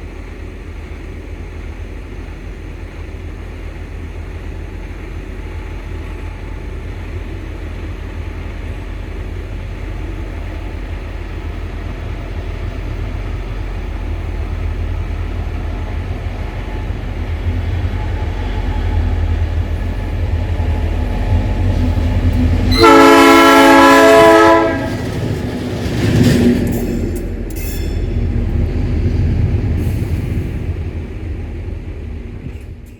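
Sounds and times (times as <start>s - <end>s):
diesel locomotive engine rumble: 0.0s - 32.9s
locomotive air horn blast: 22.6s - 25.1s.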